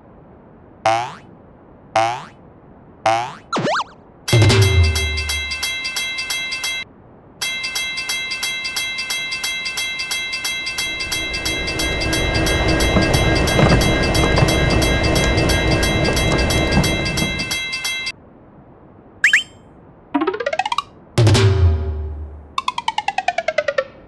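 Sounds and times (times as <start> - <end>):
passing train rumble: 4.2 - 18.4
railroad crossing bell ringing: 4.3 - 18.2.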